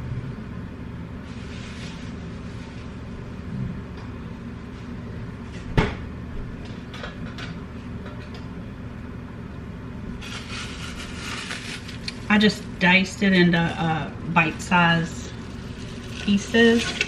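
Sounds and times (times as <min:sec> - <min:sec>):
steady low hum: 0:00.0 - 0:17.0
kitchen handling sounds: 0:16.1 - 0:17.0.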